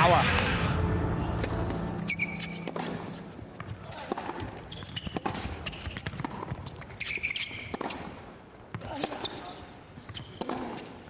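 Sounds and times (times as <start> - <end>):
racket striking ball: 1.4 - 6.9, 7.5 - 8.2, 10.1 - 11.0
tennis ball bouncing: 1.4 - 9.4, 10.0 - 11.0
shoes squeaking on court: 1.7 - 11.0.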